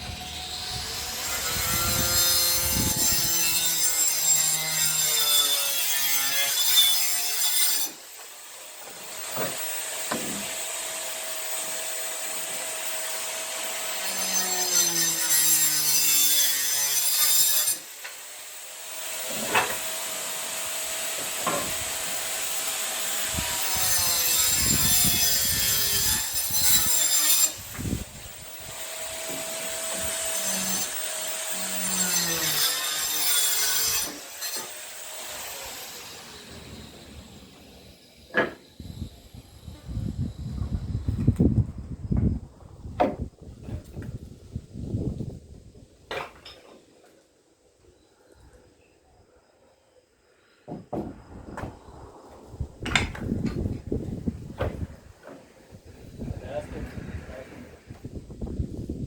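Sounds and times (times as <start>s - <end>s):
power saw cutting wood: 0.0s - 39.4s.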